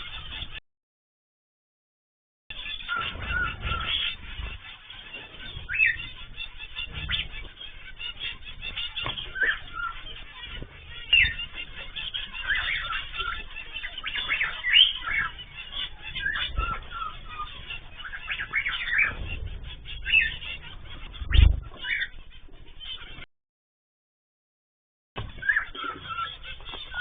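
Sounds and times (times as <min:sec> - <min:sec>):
birds chirping and squawking: 0:00.0 - 0:00.6, 0:02.5 - 0:23.3, 0:25.2 - 0:27.0
wing flutters: 0:02.6 - 0:23.2
low thumps: 0:15.0 - 0:22.6.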